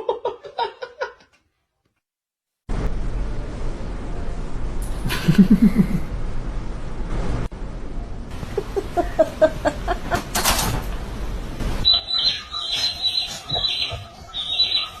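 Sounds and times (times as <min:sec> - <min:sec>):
bird chirping high: 0:11.8 - 0:15.0.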